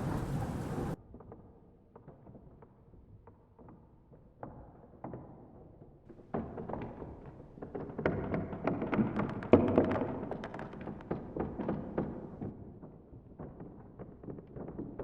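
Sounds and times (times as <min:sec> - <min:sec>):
clatter of knocks and thumps: 0:06.1 - 0:15.0.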